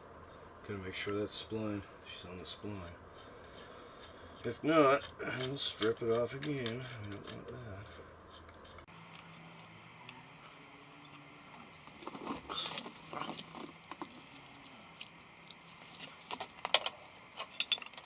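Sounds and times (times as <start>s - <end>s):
metal tools clinking and clicking: 4.7s - 7.8s, 8.9s - 18.0s.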